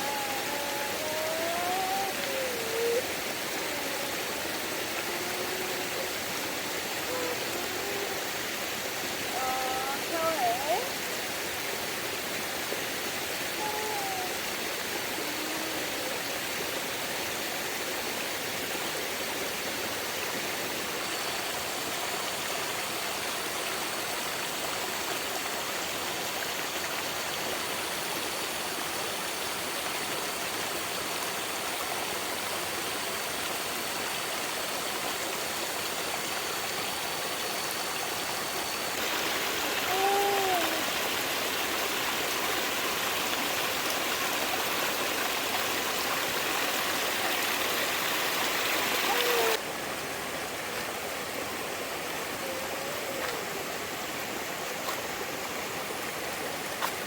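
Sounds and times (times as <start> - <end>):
water rushing: 0.0 - 57.0.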